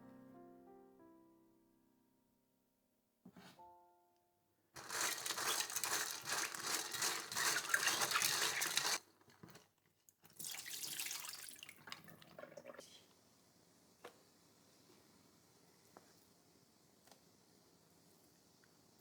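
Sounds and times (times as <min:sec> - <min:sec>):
tap water running into sink: 0:04.8 - 0:09.6, 0:10.3 - 0:12.8.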